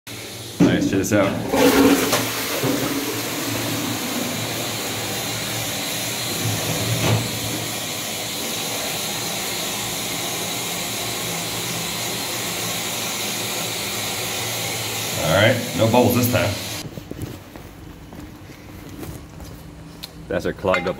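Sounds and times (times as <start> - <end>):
toilet fill valve hissing: 0.1 - 16.8.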